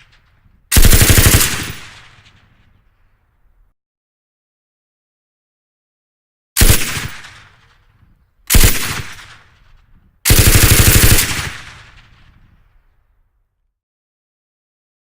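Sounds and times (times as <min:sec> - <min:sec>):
machine gun bursts with echo: 0:00.7 - 0:02.5, 0:06.6 - 0:07.8, 0:08.5 - 0:09.7, 0:10.3 - 0:12.3.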